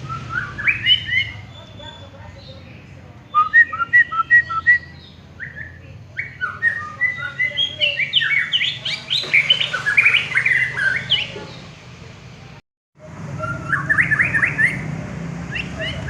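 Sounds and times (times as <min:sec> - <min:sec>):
songbird whistles and chirps: 0:00.0 - 0:02.5, 0:03.3 - 0:11.4, 0:13.3 - 0:14.8.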